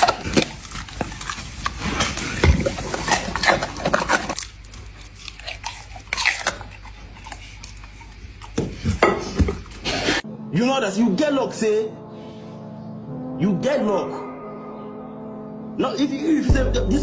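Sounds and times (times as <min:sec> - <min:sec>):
dog chewing and crunching: 0:00.0 - 0:10.2.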